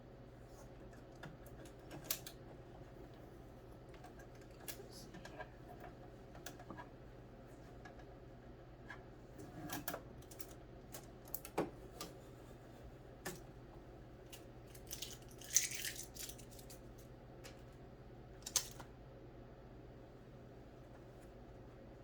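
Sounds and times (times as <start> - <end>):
clicks of plastic parts: 18.4 - 18.9.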